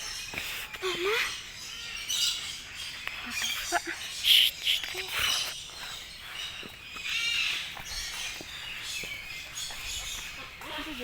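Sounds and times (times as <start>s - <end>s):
cockatoo chirps: 3.0s - 6.0s.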